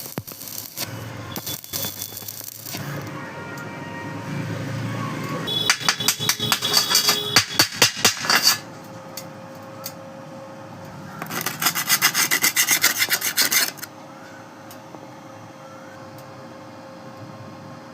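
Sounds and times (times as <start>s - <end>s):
rapid rasping scraping strokes: 11.2s - 13.9s.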